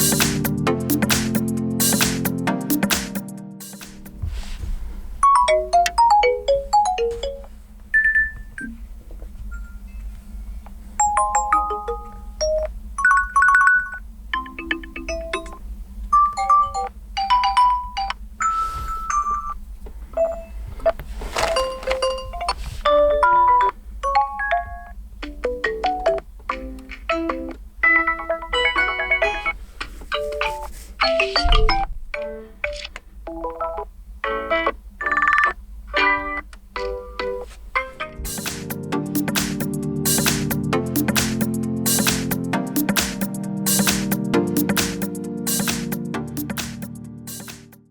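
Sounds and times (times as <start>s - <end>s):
electronic ringtone melodies: 5.2s - 8.8s, 11.0s - 15.6s, 16.2s - 19.6s, 21.8s - 26.2s, 27.1s - 29.6s, 30.2s - 31.9s.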